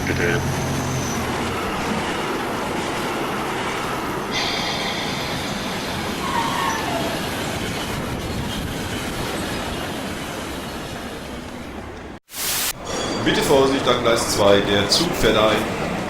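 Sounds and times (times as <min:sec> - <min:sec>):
high-pitched wheel squeal: 0:00.0 - 0:02.4, 0:04.3 - 0:07.6
train wheels rolling on track: 0:00.0 - 0:16.0.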